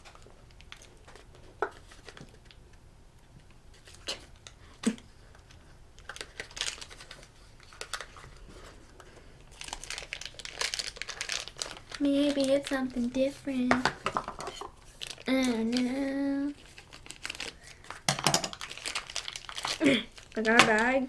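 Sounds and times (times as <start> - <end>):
plastic packaging crinkling: 5.4 - 21.0.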